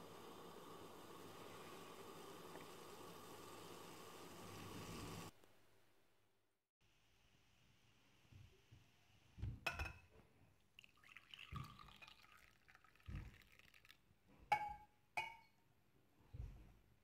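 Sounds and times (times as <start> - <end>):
liquid pouring: 10.7 - 14.0
glassware clinking: 14.5 - 15.6.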